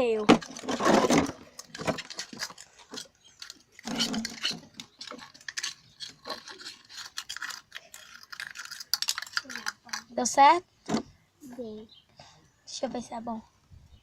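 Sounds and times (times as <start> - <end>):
slime stirred and scraped: 0.6 - 10.0.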